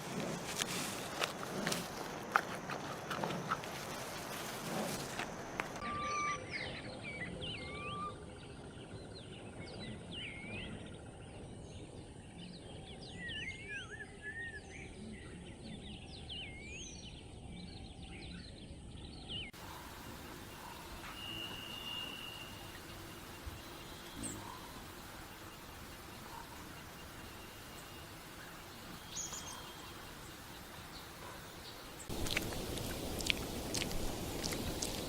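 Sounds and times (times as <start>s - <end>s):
birds chirping: 18.5s - 35.0s
hissy background: 19.6s - 35.0s.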